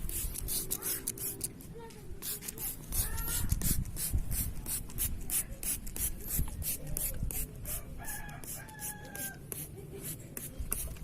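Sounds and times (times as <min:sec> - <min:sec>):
spray bottle spritzing: 0:00.0 - 0:01.6, 0:02.2 - 0:11.0
rooster crowing: 0:07.7 - 0:09.4.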